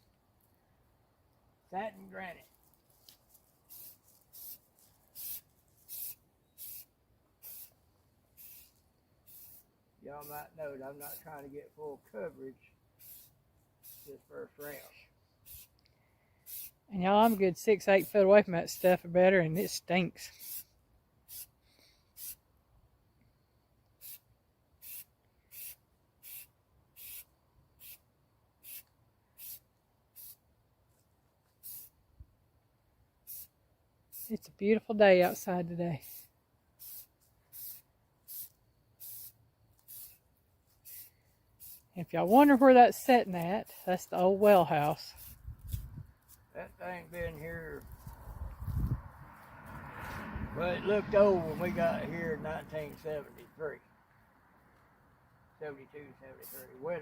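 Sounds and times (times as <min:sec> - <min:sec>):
spray paint can hissing: 0:03.7 - 0:07.8, 0:08.4 - 0:10.4, 0:13.0 - 0:14.1, 0:14.7 - 0:15.8, 0:16.4 - 0:17.4, 0:19.6 - 0:20.7, 0:21.3 - 0:22.4, 0:24.0 - 0:28.0, 0:28.6 - 0:30.4, 0:31.6 - 0:32.0, 0:33.2 - 0:34.4, 0:36.0 - 0:42.7, 0:43.7 - 0:45.9, 0:56.4 - 0:56.6.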